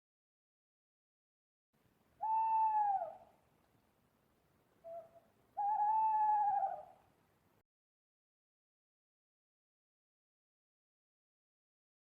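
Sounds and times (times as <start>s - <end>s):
owl hooting: 2.2s - 3.3s, 4.8s - 7.0s.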